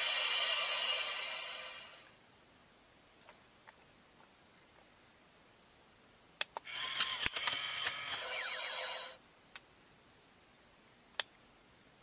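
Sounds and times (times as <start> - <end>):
toy clicks: 6.5 - 8.3
electronic toy sound effect: 6.7 - 9.2.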